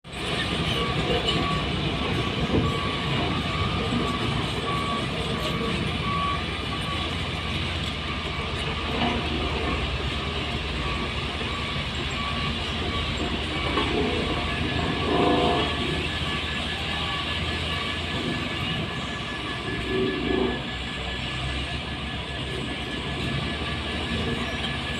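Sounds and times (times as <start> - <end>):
diesel truck engine rumbling: 0.0 - 24.9
reversing alarm beeping: 0.1 - 24.9.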